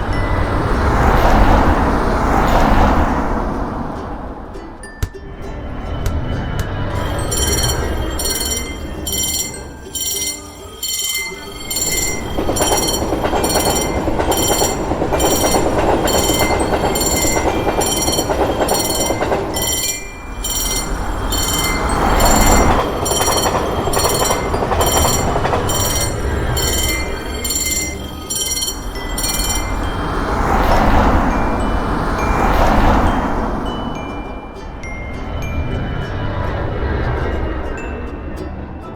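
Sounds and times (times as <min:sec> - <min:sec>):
railroad crossing bell ringing: 0:00.0 - 0:03.4, 0:06.3 - 0:38.2
train wheels rumbling on rails: 0:05.9 - 0:34.0.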